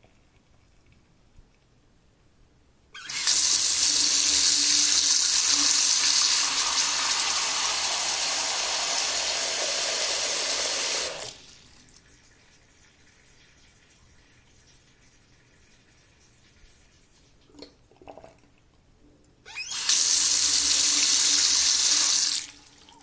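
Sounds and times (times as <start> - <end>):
faucet water running into sink: 3.0 - 11.5, 19.6 - 23.0.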